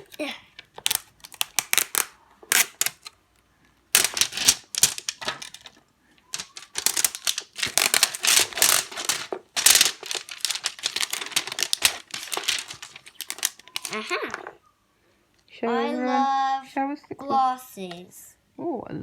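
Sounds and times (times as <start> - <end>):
plastic packaging crinkling: 0.6 - 3.2, 3.9 - 14.4.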